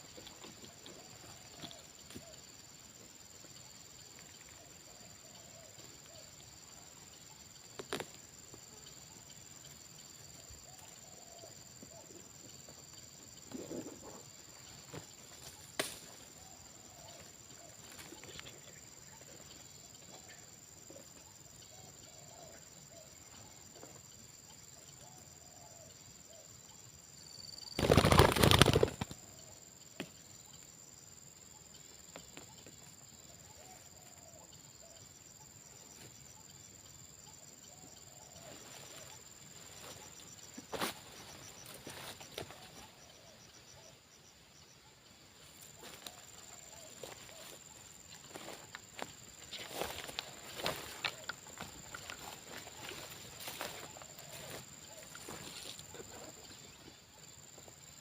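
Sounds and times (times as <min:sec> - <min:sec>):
high insect drone: 0:00.0 - 0:58.0
dove cooing: 0:10.4 - 0:12.3, 0:33.4 - 0:34.9, 0:45.8 - 0:47.6
dove wings flapping: 0:27.8 - 0:29.2.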